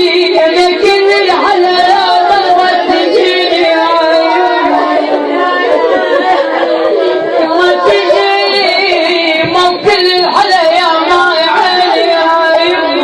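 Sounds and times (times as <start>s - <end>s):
woman chanting a lament: 0.0s - 13.0s.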